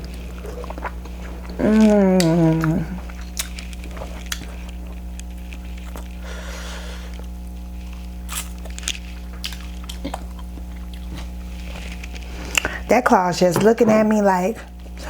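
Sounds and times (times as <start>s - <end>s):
person chewing with wet smacks: 0.0s - 6.2s, 7.1s - 12.8s
steady low hum: 0.0s - 15.0s
person humming mmm: 1.4s - 3.1s.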